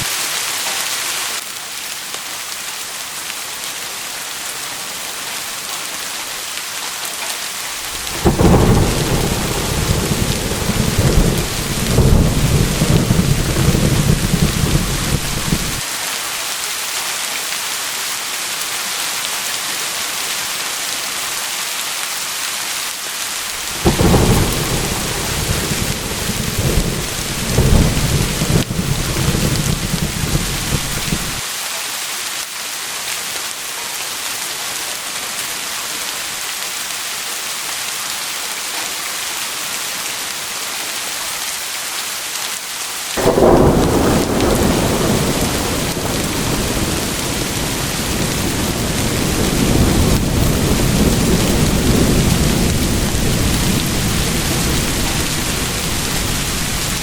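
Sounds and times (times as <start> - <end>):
steady rain falling: 0.0 - 57.0
thunder rumbling: 7.8 - 15.8, 23.4 - 31.4, 43.2 - 57.0.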